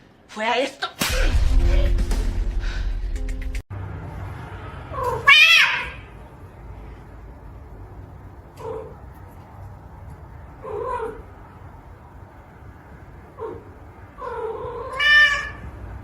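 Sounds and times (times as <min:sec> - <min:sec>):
cat meowing: 0:05.0 - 0:06.1, 0:14.2 - 0:15.7.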